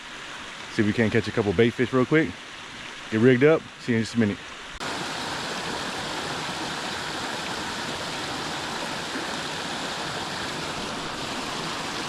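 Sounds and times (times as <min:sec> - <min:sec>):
water rushing over spillway: 0:00.0 - 0:12.0.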